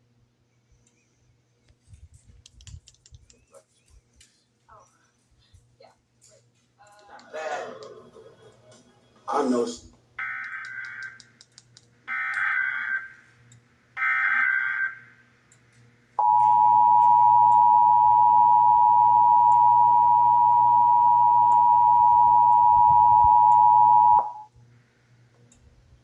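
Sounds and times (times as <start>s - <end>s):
loud steady two-tone alert signal: 16.2s - 24.4s.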